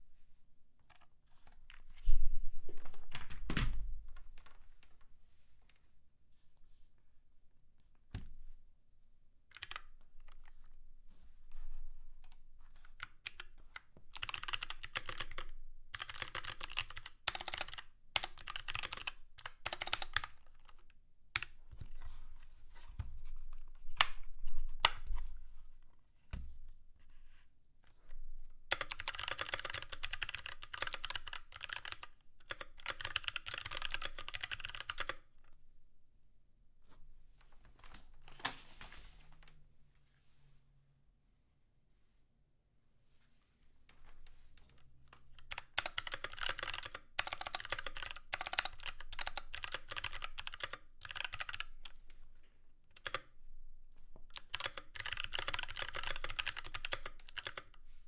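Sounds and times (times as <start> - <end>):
mechanical keyboard clicks: 9.5 - 10.4, 14.1 - 20.3, 28.7 - 35.2, 45.4 - 52.0, 53.0 - 53.3, 54.3 - 57.7.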